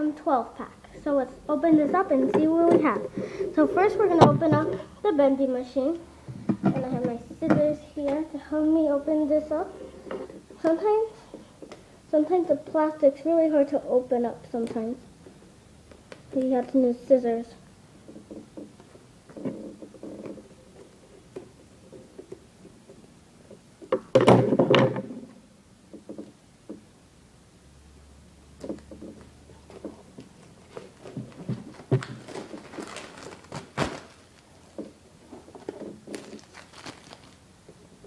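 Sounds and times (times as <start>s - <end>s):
plastic packaging clicks and knocks: 28.6s - 37.4s
plastic crinkling rustle: 29.1s - 37.5s.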